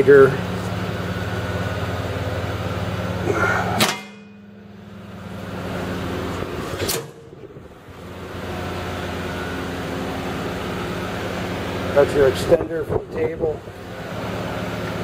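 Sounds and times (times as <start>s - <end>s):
steady electrical hum: 0.0s - 15.0s
sharp metallic clanks: 3.4s - 5.3s, 6.6s - 7.4s.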